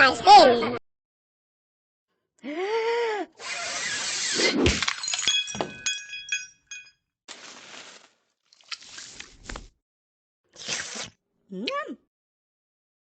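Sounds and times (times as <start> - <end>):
glass breaking: 4.7 - 6.9
glass shards clinking: 4.8 - 7.0.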